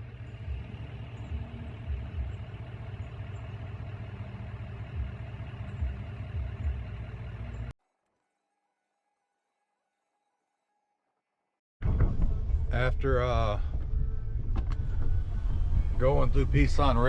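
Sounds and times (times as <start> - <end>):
engine and road rumble: 0.0 - 7.8, 12.0 - 17.0.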